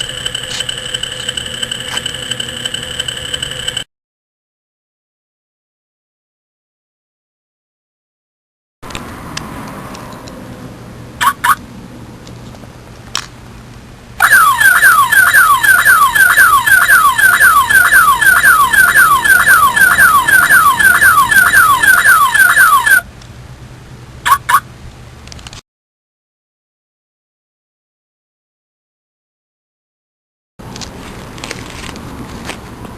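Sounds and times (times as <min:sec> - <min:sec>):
car alarm chirps: 0:11.2 - 0:11.6, 0:14.2 - 0:23.0, 0:24.3 - 0:24.7
car alarm siren whooping: 0:11.2 - 0:11.6, 0:14.2 - 0:23.1.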